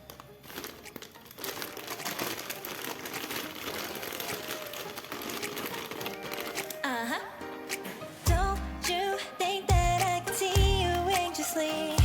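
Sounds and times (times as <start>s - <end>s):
packaging crinkling and rustling: 0.0s - 7.0s.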